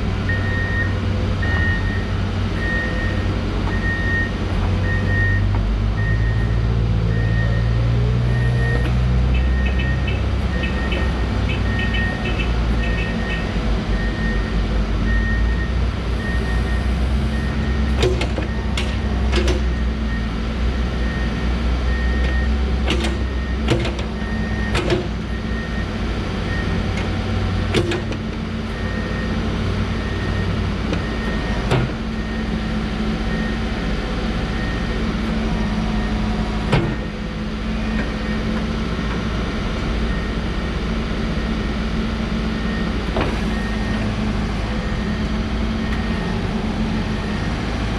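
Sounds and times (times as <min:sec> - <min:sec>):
diesel engine running: 0:00.0 - 0:47.9
high beeping tone: 0:08.6 - 0:14.5.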